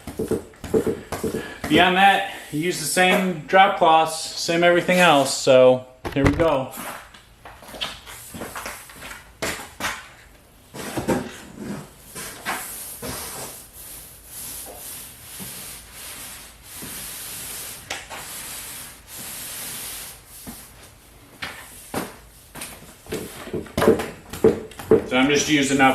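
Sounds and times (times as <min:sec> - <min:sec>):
paint roller hissing on ceiling: 0:00.0 - 0:05.5, 0:12.0 - 0:23.6
knocks and clicks: 0:06.0 - 0:06.6.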